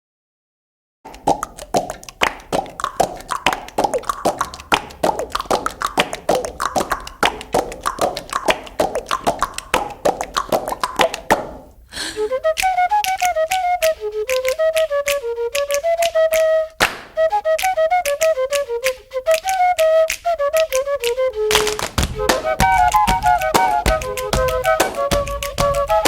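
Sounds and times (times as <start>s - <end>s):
fast percussion music: 1.1s - 11.7s, 21.5s - 26.0s.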